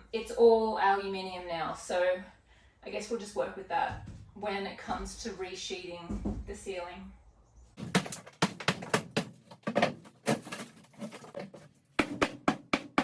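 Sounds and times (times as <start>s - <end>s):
demolition knocks and clatters: 7.8s - 13.0s.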